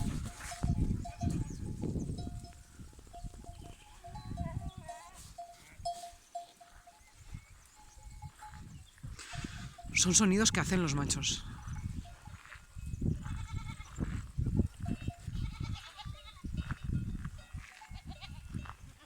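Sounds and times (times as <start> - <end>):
wind buffeting microphone: 0.0 - 6.0, 7.0 - 19.0
goat bell clinking: 0.0 - 19.0
faint goat call: 15.2 - 16.5.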